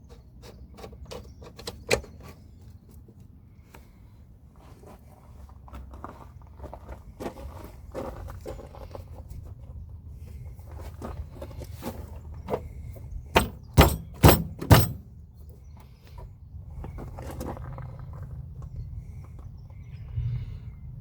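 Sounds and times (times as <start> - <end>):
hand tools clinking: 13.4 - 15.0
sharp knocks: 13.4 - 15.1.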